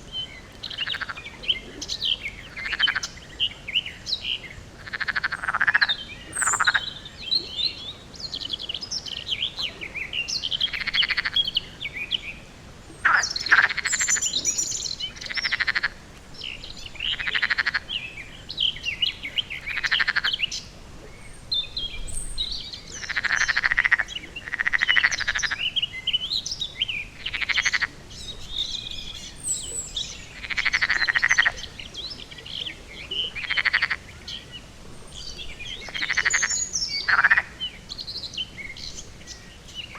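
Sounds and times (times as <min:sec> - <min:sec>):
frogs croaking: 0:00.0 - 0:39.9
small birds chirping: 0:00.0 - 0:39.9.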